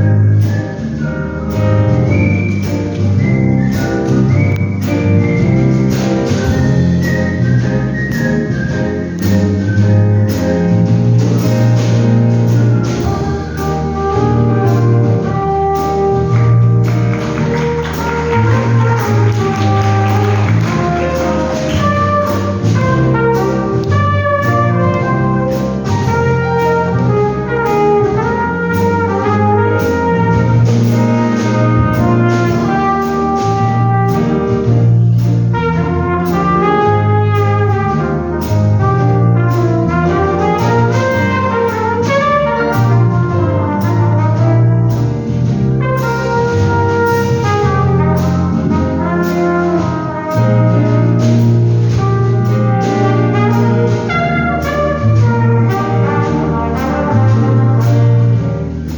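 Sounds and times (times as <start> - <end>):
whistled melody: 0.0 - 28.0
brass-heavy instrumental backing: 0.0 - 58.9.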